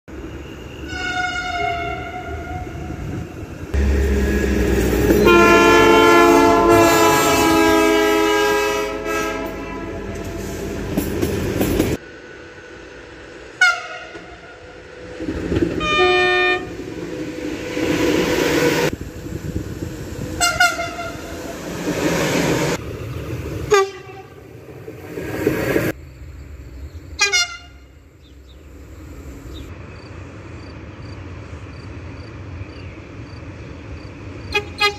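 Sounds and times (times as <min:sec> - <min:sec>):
moving train noise: 0:00.1 - 0:34.9
train horn blasts: 0:00.8 - 0:03.2, 0:03.8 - 0:10.7, 0:13.6 - 0:14.8, 0:15.7 - 0:16.8, 0:20.4 - 0:21.4, 0:23.7 - 0:24.4, 0:27.2 - 0:28.0, 0:34.5 - 0:34.9.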